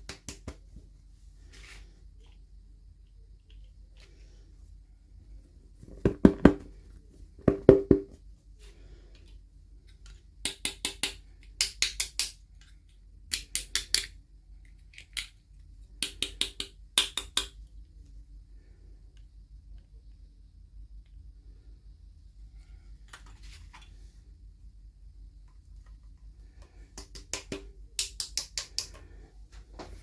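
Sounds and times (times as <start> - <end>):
small hard objects clicking: 10.0 - 15.4, 27.0 - 29.1.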